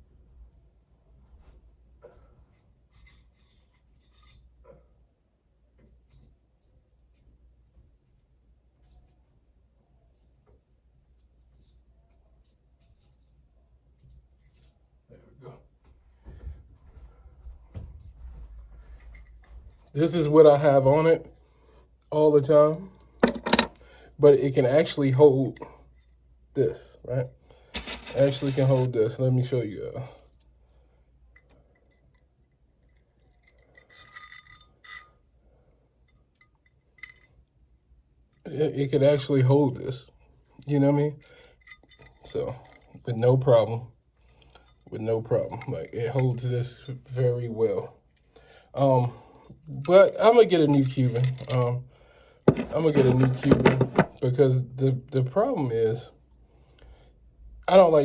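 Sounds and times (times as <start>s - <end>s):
chain scraping and rustling: 27.8s - 30.5s, 31.4s - 35.2s, 41.5s - 43.1s, 50.2s - 51.8s, 52.5s - 54.2s
chain jingling: 32.8s - 35.2s
metal chain links clicking: 32.8s - 35.2s.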